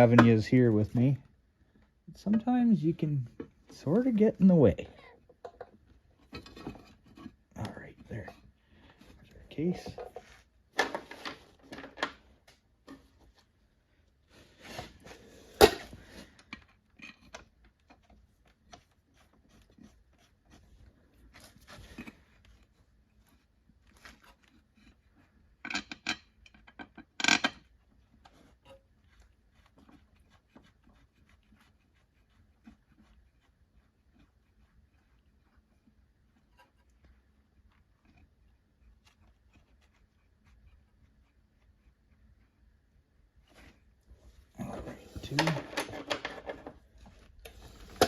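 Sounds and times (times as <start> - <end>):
metal parts clinking and knocking: 45.2 - 46.8.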